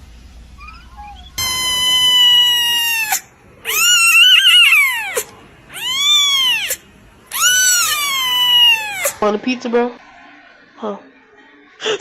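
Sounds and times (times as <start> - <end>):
animal wailing calls: 0.6 - 9.2.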